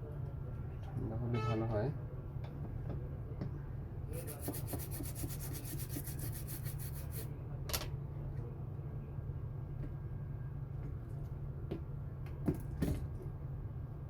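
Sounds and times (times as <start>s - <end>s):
rubbing on a hard surface: 4.2s - 7.3s.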